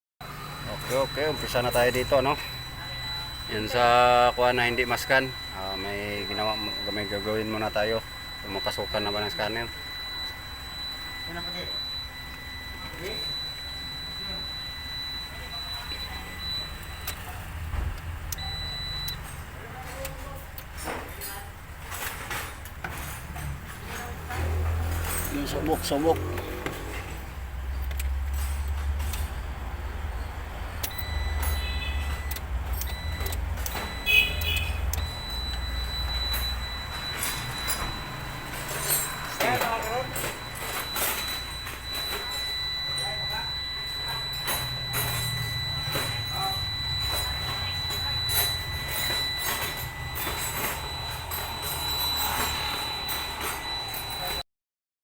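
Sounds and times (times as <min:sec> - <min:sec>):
high-pitched tone: 0:00.2 - 0:17.5, 0:30.2 - 0:54.4
short electronic beep: 0:00.2 - 0:20.3, 0:24.4 - 0:27.2, 0:29.1 - 0:54.4.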